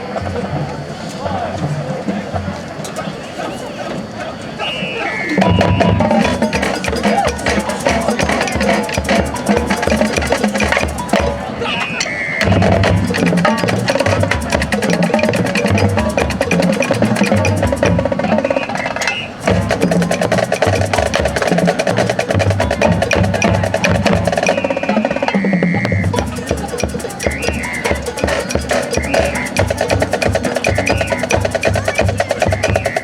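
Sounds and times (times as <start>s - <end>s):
marching band playing latin music: 0.0s - 33.0s
sustained horn lines: 4.4s - 33.0s.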